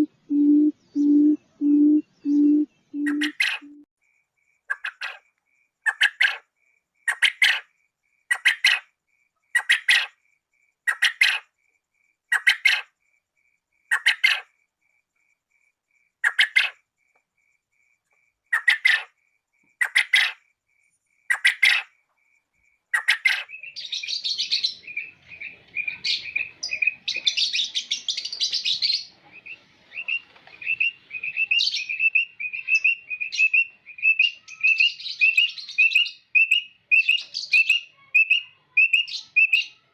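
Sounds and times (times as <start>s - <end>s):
quail calling: 0.0s - 3.8s, 4.7s - 5.2s.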